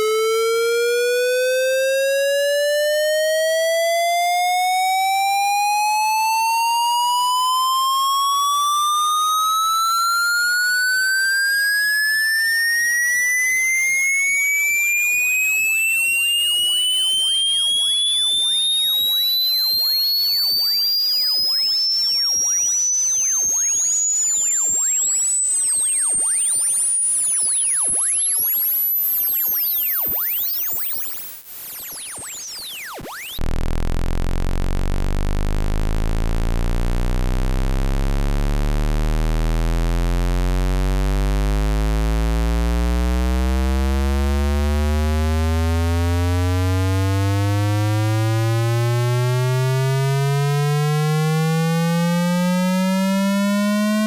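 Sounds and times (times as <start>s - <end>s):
high-pitched rising pure tone: 9.8s - 39.2s
buzzy low rising tone: 13.9s - 54.0s.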